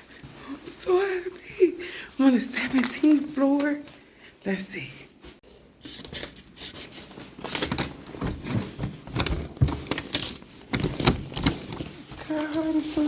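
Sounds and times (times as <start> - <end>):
rustling: 5.1 - 13.0.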